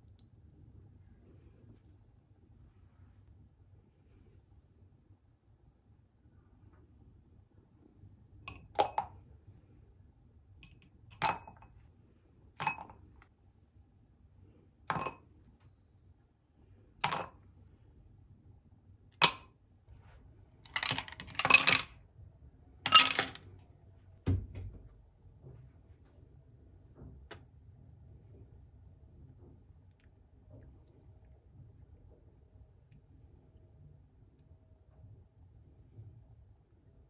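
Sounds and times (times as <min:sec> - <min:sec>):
dishes clattering: 0:22.9 - 0:23.5
dishes clinking: 0:22.9 - 0:23.5.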